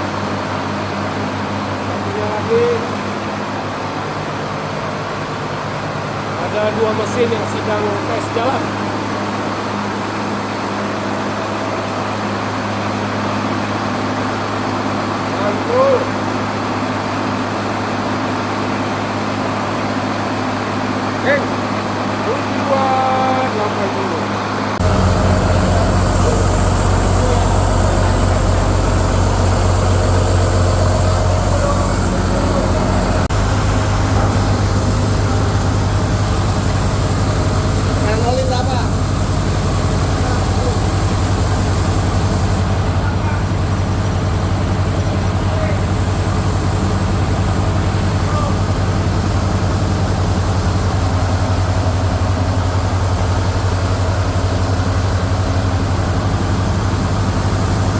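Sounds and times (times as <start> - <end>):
compressor mechanical drone: 0.0 - 57.9
higher machine tone: 24.7 - 57.9
constant low hum: 24.8 - 57.9.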